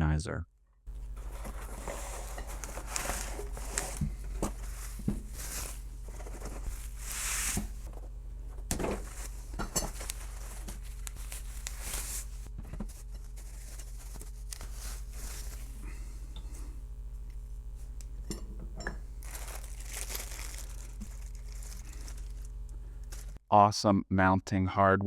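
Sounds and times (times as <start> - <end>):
steady low hum: 0.0 - 23.4
packaging rustling: 0.9 - 8.0, 8.7 - 15.7, 19.2 - 23.4.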